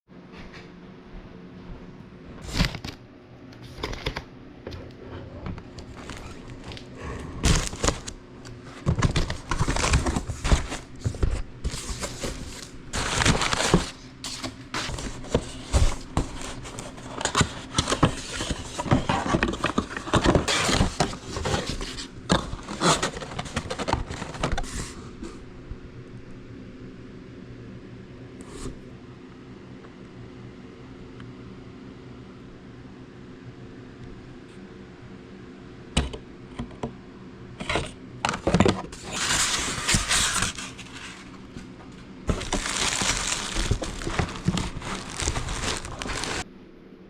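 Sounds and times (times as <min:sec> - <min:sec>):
steady low hum: 0:00.1 - 0:47.0
crinkling and scraping of handled things: 0:02.4 - 0:25.4, 0:37.6 - 0:46.5.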